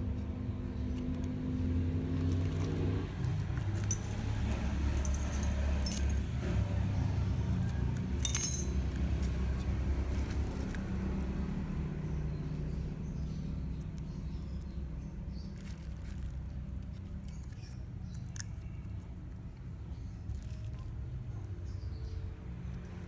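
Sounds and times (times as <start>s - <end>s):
parcel handling clicks and clinks: 3.3s - 6.2s, 7.5s - 10.7s.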